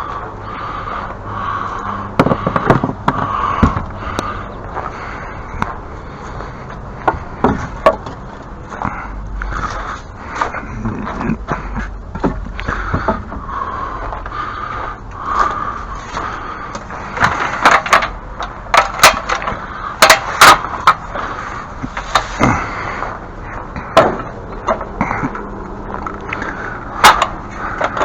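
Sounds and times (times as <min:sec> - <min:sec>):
steady rattling: 0:00.0 - 0:28.0
hard objects knocking: 0:02.1 - 0:04.0, 0:07.0 - 0:08.2, 0:10.4 - 0:13.5, 0:16.7 - 0:21.2.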